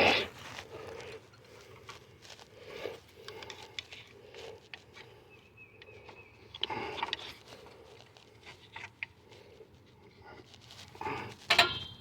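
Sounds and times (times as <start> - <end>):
clicks and scrapes of tools: 3.2 - 5.1, 5.8 - 9.2, 10.4 - 12.0.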